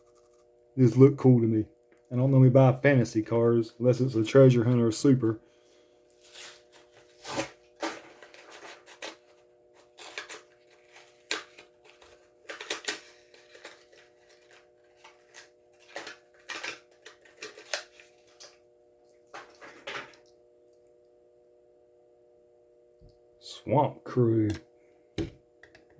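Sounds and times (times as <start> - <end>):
plastic packaging crinkling: 6.1 - 18.6.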